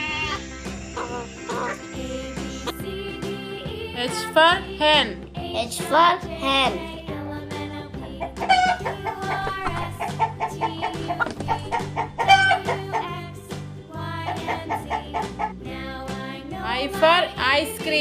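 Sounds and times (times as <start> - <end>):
hen clucking: 0.0 - 2.8, 8.0 - 13.2, 14.2 - 15.5
cheerful children's music: 0.0 - 18.0.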